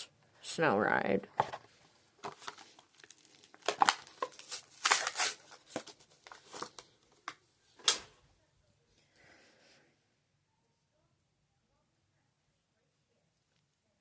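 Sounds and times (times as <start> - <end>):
plastic packaging crinkling: 2.2 - 7.3
packaging ripping: 2.3 - 6.8.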